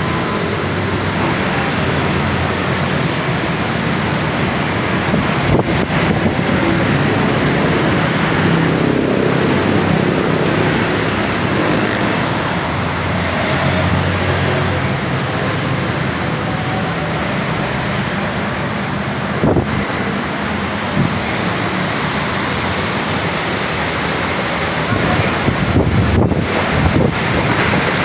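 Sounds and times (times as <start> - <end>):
strong wind rushing: 0.0 - 23.1, 24.6 - 28.0
wind buffeting microphone: 4.2 - 13.3, 19.3 - 20.2, 24.8 - 28.0.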